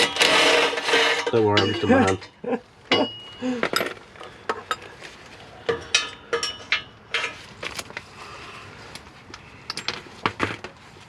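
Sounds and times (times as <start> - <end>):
metal hand tools clanking: 0.0 - 4.0.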